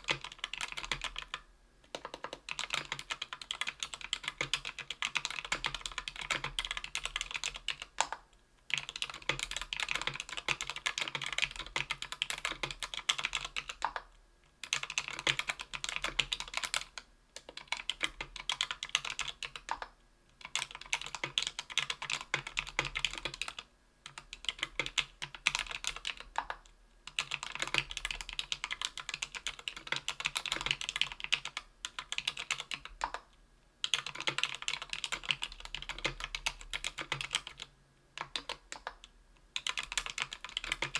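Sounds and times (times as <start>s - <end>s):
typing on mechanical keyboard: 0.0s - 40.9s.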